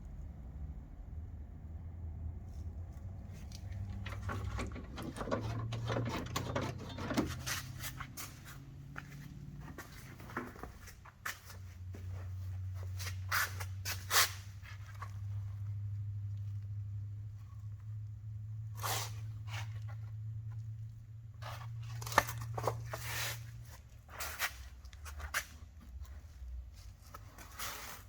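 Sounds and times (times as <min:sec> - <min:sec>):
low hum: 0:00.0 - 0:07.2
clicks taps and rustles: 0:03.0 - 0:08.2.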